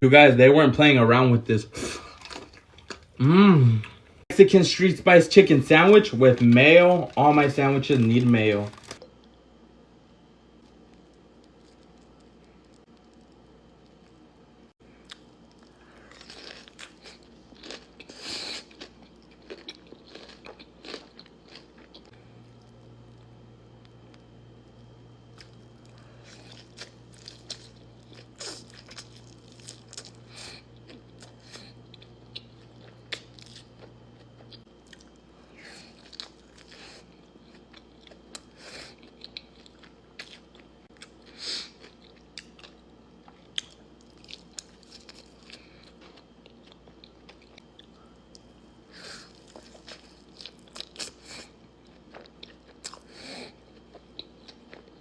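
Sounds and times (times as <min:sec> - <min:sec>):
low steady hum: 0:00.0 - 0:55.0
crunchy bites and wet chewing: 0:01.9 - 0:04.2, 0:05.3 - 0:09.1, 0:15.0 - 0:22.1, 0:25.3 - 0:55.0.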